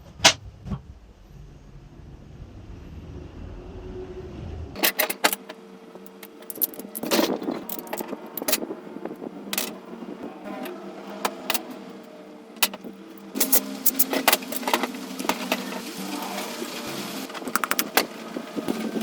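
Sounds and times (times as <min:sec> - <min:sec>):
low rumble: 0:00.0 - 0:04.8
steady hum: 0:00.0 - 0:19.0
metallic clicks and clinks: 0:06.0 - 0:08.6.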